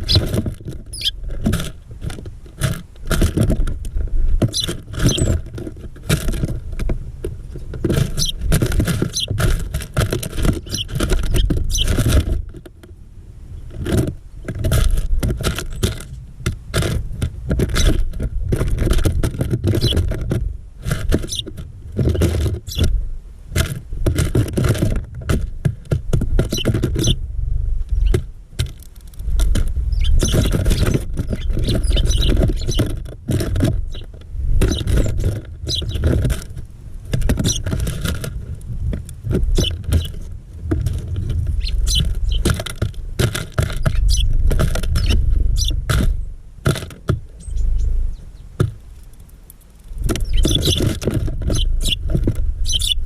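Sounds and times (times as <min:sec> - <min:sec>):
birds pecking and scratching: 0:00.0 - 0:53.0
short high bird chirps: 0:04.5 - 0:05.3.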